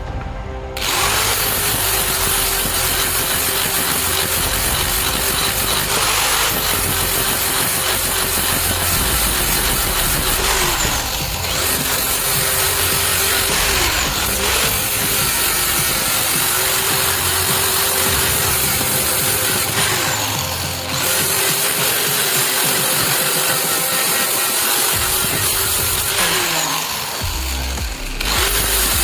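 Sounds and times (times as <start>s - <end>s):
power tool motor running: 0.8s - 29.0s.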